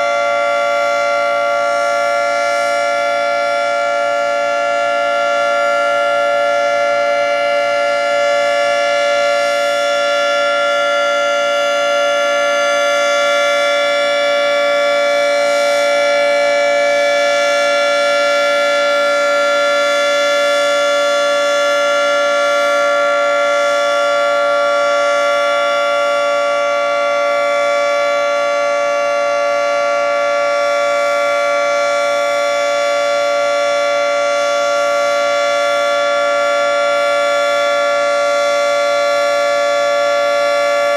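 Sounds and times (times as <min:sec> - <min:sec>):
steady warning siren chord: 0:00.0 - 0:40.9.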